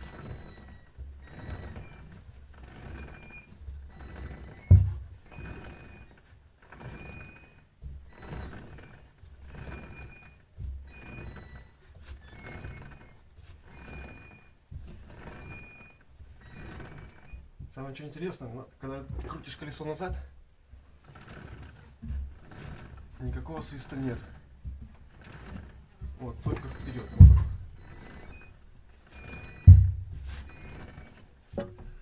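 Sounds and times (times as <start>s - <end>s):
metal squeak from spinning wheel: 0.0s - 20.3s, 20.9s - 32.0s
loud thump: 4.7s - 5.1s, 27.2s - 27.8s, 29.7s - 30.2s.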